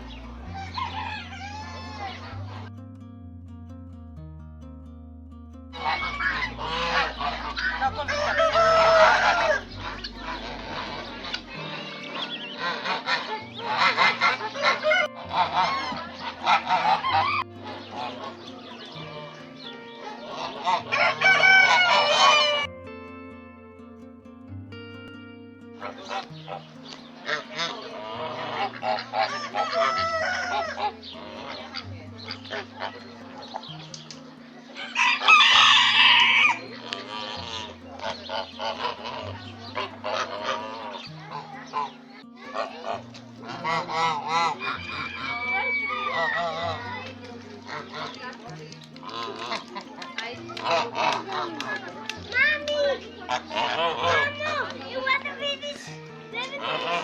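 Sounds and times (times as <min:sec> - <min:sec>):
chickens clucking: 0:00.0 - 0:02.7, 0:05.7 - 0:22.7, 0:25.8 - 0:57.0
geese honking: 0:00.0 - 0:02.8, 0:05.7 - 0:22.7, 0:25.8 - 0:57.0
soft background music: 0:00.0 - 0:57.0
rooster crowing: 0:00.4 - 0:02.3, 0:05.8 - 0:09.6, 0:20.8 - 0:22.7, 0:29.2 - 0:30.9, 0:34.8 - 0:36.6, 0:44.3 - 0:46.6.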